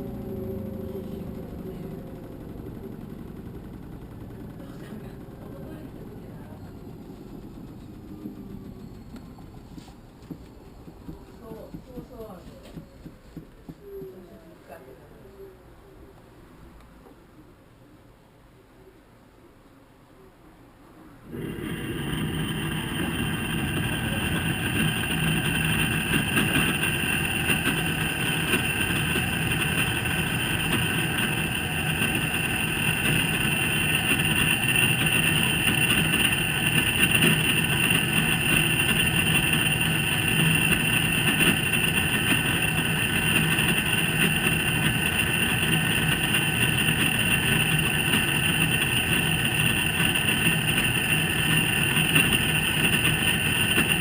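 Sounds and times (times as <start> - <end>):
washer low hum: 0.0 - 14.7, 21.2 - 54.0
high metallic ringing tone: 21.3 - 54.0.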